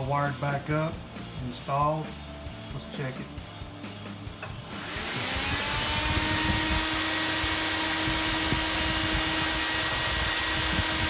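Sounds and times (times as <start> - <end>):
electric cooling fan whine: 3.6 - 11.0.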